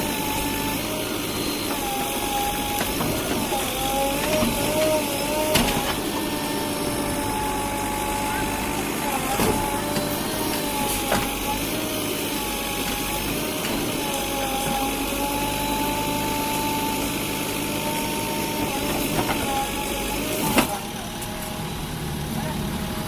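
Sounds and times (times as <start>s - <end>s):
thin wavering whine: 0.0s - 18.6s
heavy machinery diesel engine: 0.0s - 23.0s.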